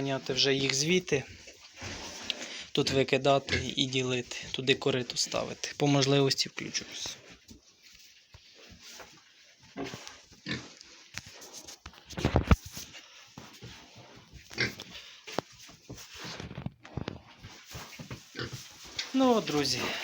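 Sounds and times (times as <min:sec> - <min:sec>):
pigs grunting: 0:09.8 - 0:10.8.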